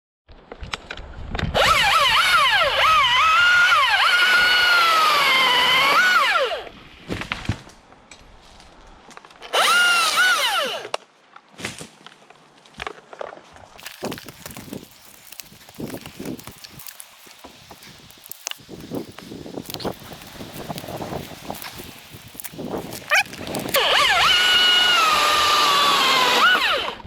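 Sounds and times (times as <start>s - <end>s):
chainsaw revving: 1.6s - 6.7s, 9.5s - 10.9s, 21.3s - 27.0s.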